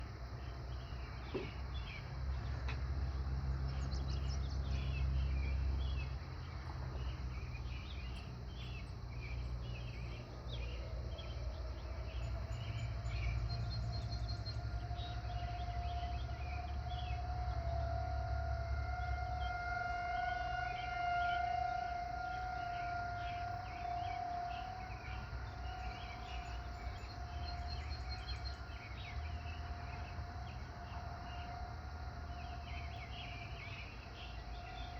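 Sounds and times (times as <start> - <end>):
warning siren: 0.1 - 34.9
birds chirping: 0.2 - 34.9.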